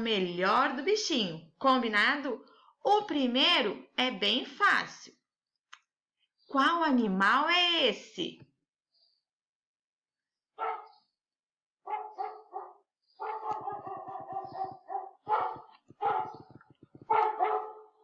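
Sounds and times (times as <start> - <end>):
dog barking: 10.6 - 11.0, 11.8 - 18.0.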